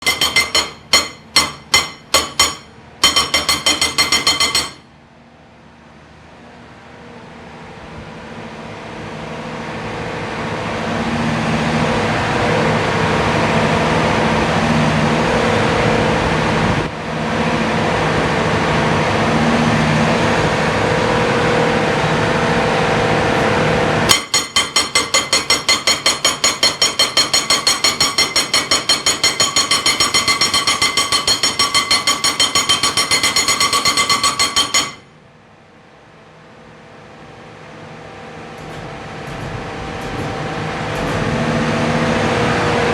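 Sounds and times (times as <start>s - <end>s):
hydraulic breaker hammering: 0.0s - 4.8s, 24.1s - 35.1s
steady machine hum: 0.0s - 4.8s.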